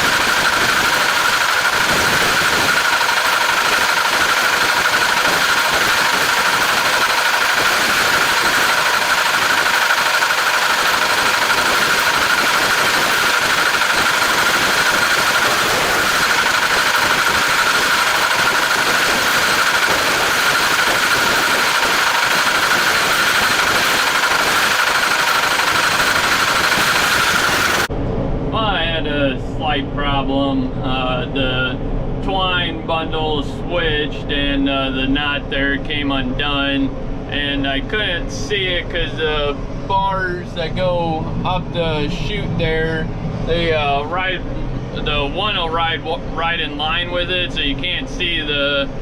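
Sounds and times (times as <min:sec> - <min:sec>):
tractor engine running: 0:00.0 - 0:27.9
high-pitched whine: 0:00.0 - 0:49.0.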